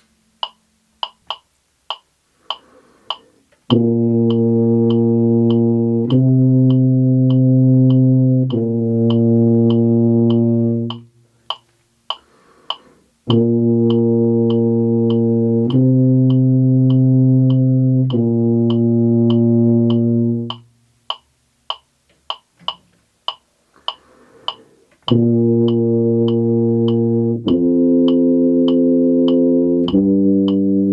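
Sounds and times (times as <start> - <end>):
metronome clicking: 0.4 - 30.9
tuba playing sustained notes: 3.7 - 11.3, 13.3 - 20.8, 25.1 - 30.9.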